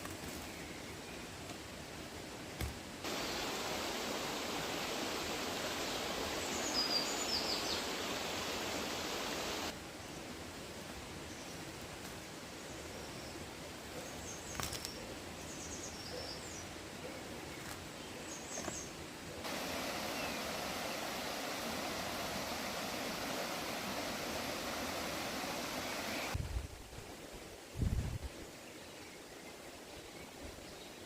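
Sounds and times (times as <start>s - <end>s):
faint bird chirps: 5.7s - 9.7s, 19.8s - 26.4s.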